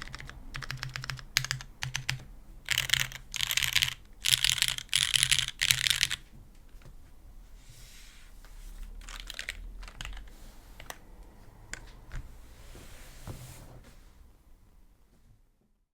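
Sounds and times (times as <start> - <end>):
mechanical keyboard typing: 0.0 - 6.2, 9.0 - 11.0.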